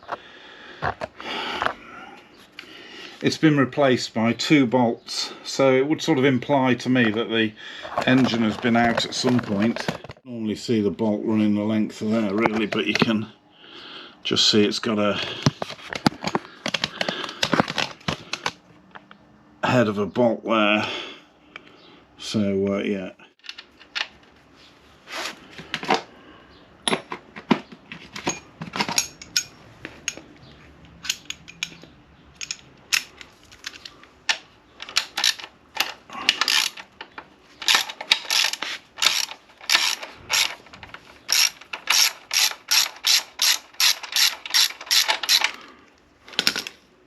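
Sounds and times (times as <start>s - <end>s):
ratchet wrench clicking: 34.8s - 36.8s, 37.6s - 40.6s, 41.3s - 45.6s.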